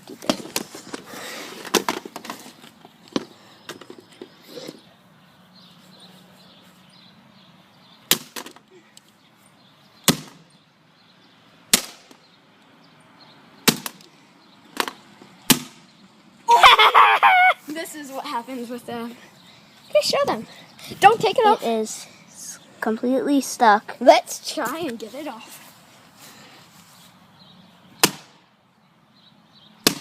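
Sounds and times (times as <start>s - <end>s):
sharp plastic knocks: 8.1s - 8.7s, 13.6s - 14.1s, 14.7s - 15.8s, 28.0s - 28.4s.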